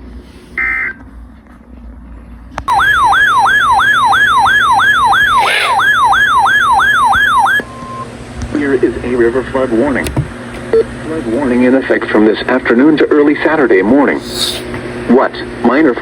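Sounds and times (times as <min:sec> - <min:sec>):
warbling siren alert tone: 0:02.7 - 0:08.0.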